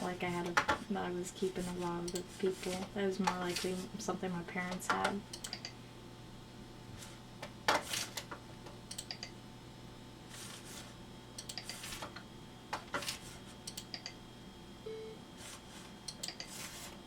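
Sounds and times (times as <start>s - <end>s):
keyboard or mouse clicks: 5.3s - 5.7s, 8.9s - 9.3s, 13.7s - 14.2s, 16.1s - 16.5s.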